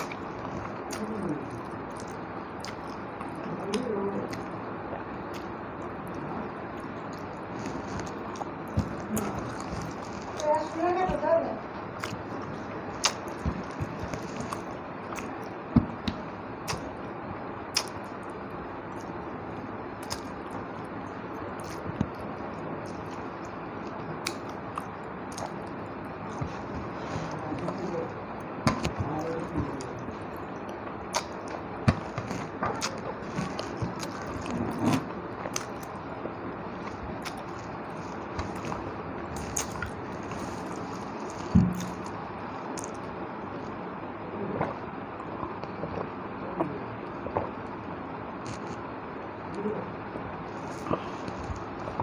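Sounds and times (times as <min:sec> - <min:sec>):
person chewing with wet smacks: 0:00.0 - 0:11.2, 0:11.8 - 0:43.8, 0:44.6 - 0:48.9, 0:50.5 - 0:52.0
mouth and hand clicks: 0:17.7 - 0:18.1.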